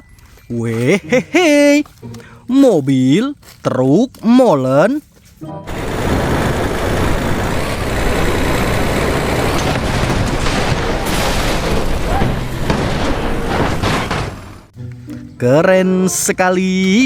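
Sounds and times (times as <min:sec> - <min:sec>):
heavy engine rumbling: 0:05.4 - 0:15.7
sharp knocks: 0:09.3 - 0:14.7.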